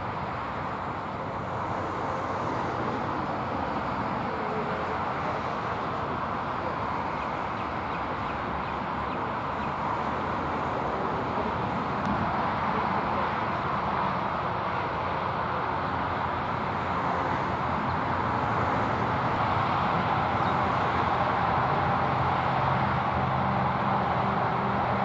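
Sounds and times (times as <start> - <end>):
road traffic hum: 0.0 - 25.0.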